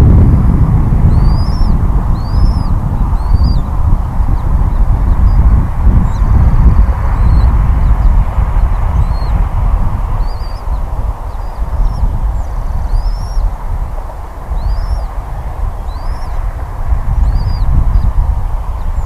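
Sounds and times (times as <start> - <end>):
wind buffeting microphone: 0.0 - 19.0
bird chirping: 1.1 - 3.7, 7.1 - 8.2, 9.0 - 9.4, 10.2 - 13.5, 14.5 - 15.2, 15.8 - 16.5, 17.2 - 18.2.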